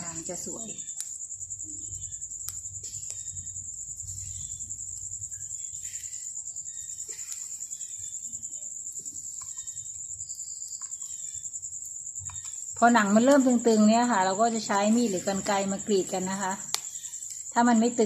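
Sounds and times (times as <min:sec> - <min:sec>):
cricket trilling: 0:00.0 - 0:18.0
faint clicks: 0:07.0 - 0:07.6, 0:09.0 - 0:09.8, 0:12.2 - 0:13.5, 0:16.6 - 0:17.5.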